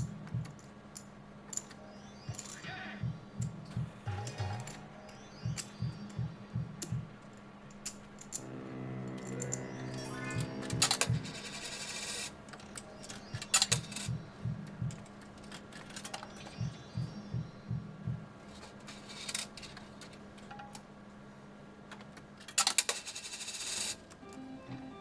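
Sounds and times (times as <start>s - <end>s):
coins clinking and jangling: 0.0s - 2.6s, 9.2s - 14.2s, 22.5s - 24.0s
electrical hum of machines: 0.0s - 25.0s
soft low thuds: 5.5s - 7.1s, 14.1s - 15.0s, 16.6s - 18.3s.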